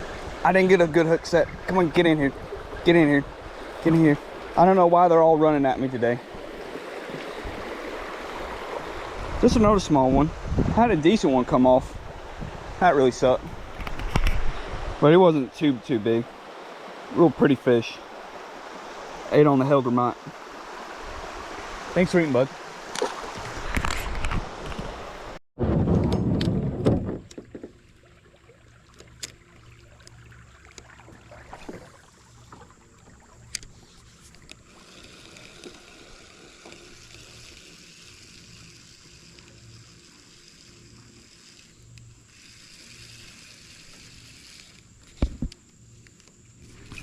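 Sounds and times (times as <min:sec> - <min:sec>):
wind buffeting microphone: 0:00.0 - 0:04.6, 0:06.2 - 0:15.0
shallow creek rushing: 0:00.0 - 0:25.4, 0:27.7 - 0:45.5.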